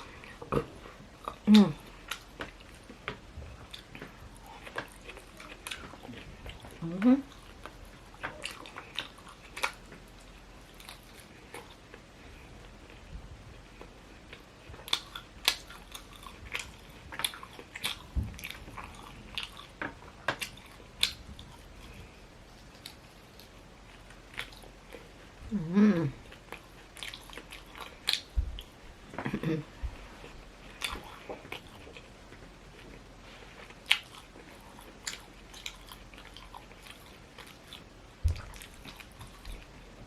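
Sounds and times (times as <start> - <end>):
chewing with wet mouth clicks: 0.0 - 25.2, 26.2 - 29.3, 30.2 - 33.0, 33.6 - 40.0
short hum-like voice sound: 25.4 - 26.2, 29.2 - 30.0.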